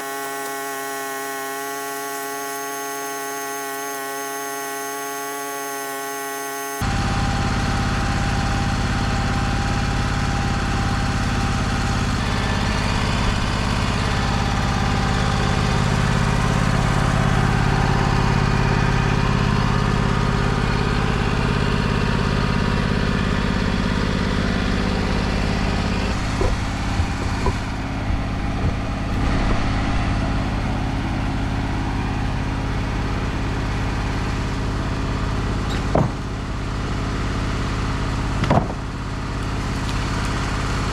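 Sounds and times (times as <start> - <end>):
engine running: 0.0 - 40.9
sharp knocks: 25.8 - 30.2, 35.8 - 36.3, 38.4 - 38.8.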